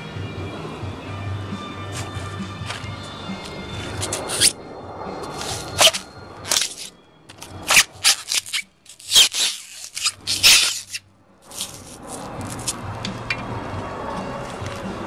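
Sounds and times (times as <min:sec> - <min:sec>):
sharp scraping and crackling: 0:01.9 - 0:04.6, 0:05.2 - 0:12.9.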